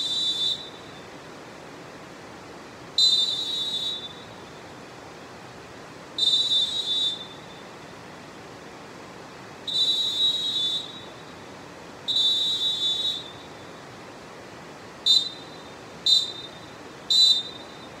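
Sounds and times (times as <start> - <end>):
referee whistle blasts: 0.0 - 0.9, 3.0 - 4.4, 6.2 - 7.6, 9.7 - 11.3, 12.1 - 13.6, 15.1 - 18.0.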